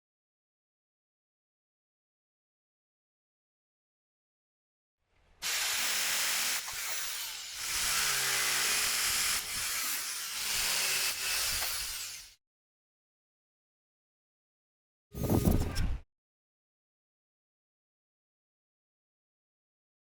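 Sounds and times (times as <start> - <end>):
power tool hissing on metal: 5.4 - 12.4.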